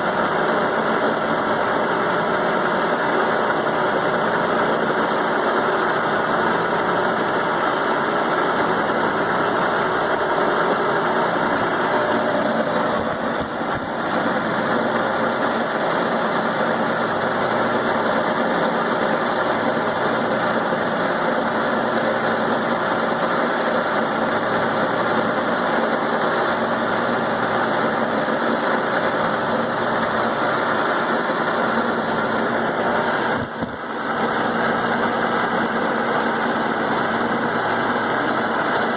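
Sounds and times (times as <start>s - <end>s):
milling machine cutting steel: 0.0s - 38.9s.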